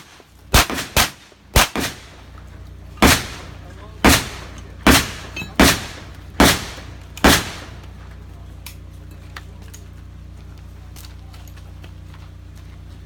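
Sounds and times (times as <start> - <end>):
shotgun shots echoing: 0.0 - 2.4, 3.0 - 8.0.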